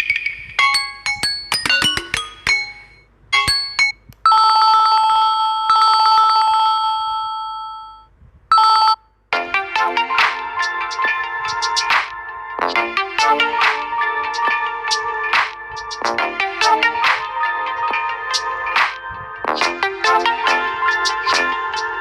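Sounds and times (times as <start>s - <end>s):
plucked chiming ringtone tune: 0.0s - 9.0s
busy electronic ringtone tune: 0.0s - 22.0s
trilling electronic phone ring: 3.7s - 9.0s.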